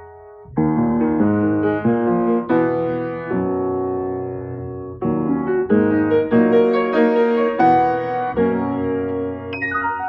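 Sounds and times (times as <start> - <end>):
slow piano chord: 3.5 - 10.0.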